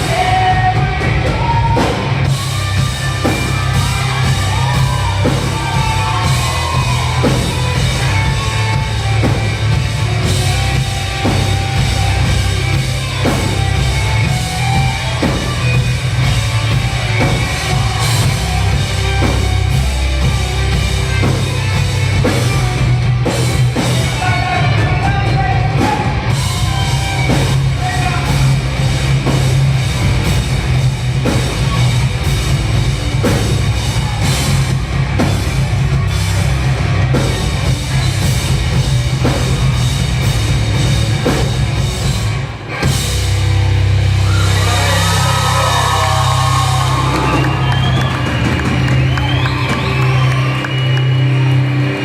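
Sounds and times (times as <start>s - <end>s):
person singing: 0.0s - 2.0s
drum kit beat: 0.0s - 52.0s
rock band playing live: 0.0s - 52.0s.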